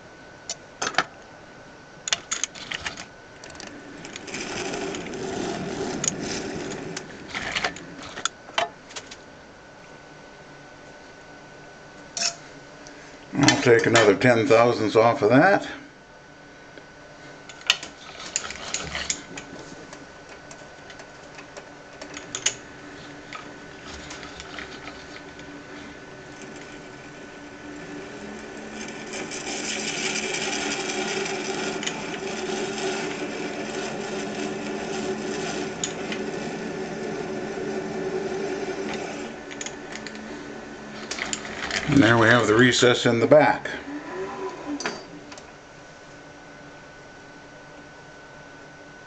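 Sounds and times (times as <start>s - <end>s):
small lathe cutting plastic: 3.6s - 8.3s, 22.2s - 42.5s.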